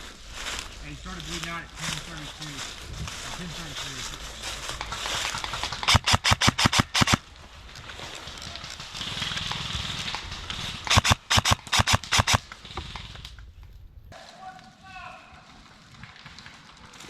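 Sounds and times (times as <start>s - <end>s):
airsoft gun firing: 4.9s - 7.2s, 10.9s - 12.4s.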